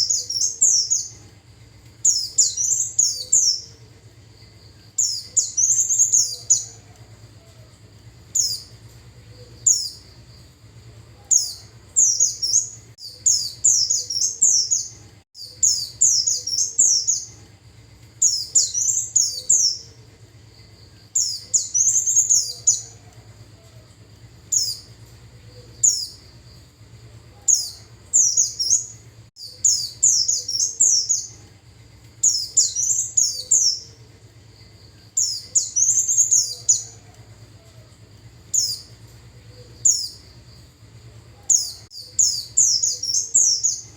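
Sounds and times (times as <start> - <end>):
white-eye bird chirping: 0.0 - 1.2, 2.0 - 3.8, 5.0 - 6.8, 8.4 - 8.7, 9.3 - 10.2, 11.3 - 17.4, 18.2 - 20.0, 21.2 - 23.0, 25.5 - 26.3, 27.4 - 31.4, 32.2 - 34.0, 35.2 - 37.0, 38.5 - 38.9, 39.5 - 40.3, 41.5 - 43.9.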